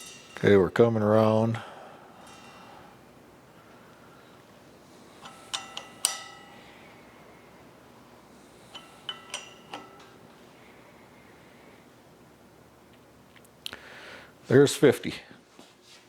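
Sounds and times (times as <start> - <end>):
sharp metallic clinks: 0.0 - 0.7, 1.6 - 3.1, 5.2 - 7.0, 8.6 - 10.2.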